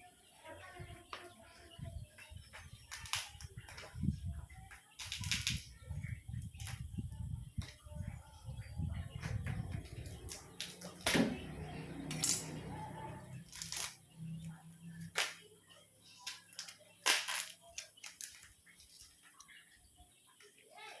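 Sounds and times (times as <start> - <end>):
packaging cracking and tearing: 16.6 - 18.4.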